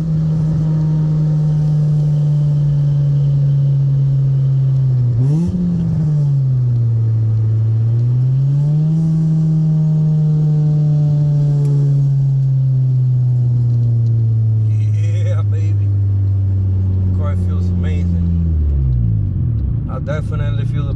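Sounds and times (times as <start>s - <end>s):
car engine and exhaust droning: 0.0s - 20.9s.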